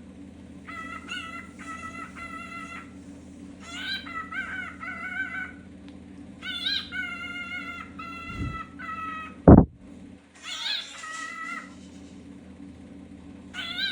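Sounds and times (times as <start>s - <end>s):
steady low hum: 0.0s - 13.9s
cockatiel whistled calls: 6.4s - 9.3s, 10.4s - 11.6s, 13.6s - 13.9s.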